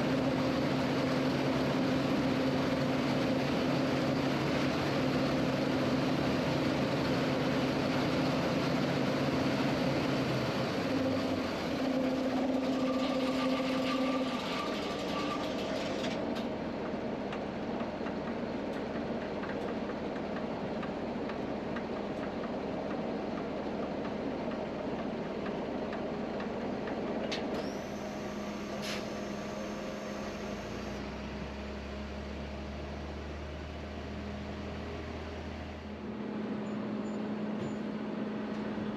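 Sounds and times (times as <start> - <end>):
tractor engine hum: 0.0 - 38.9
harvester mechanical rattle: 12.4 - 29.3.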